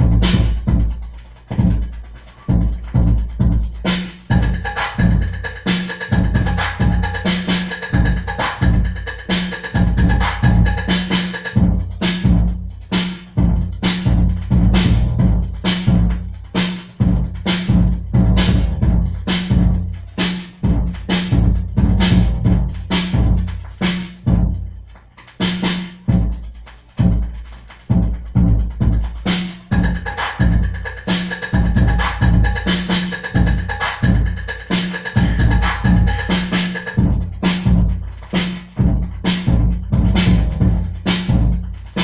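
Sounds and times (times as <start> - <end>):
funk dance track: 0.0 - 42.0.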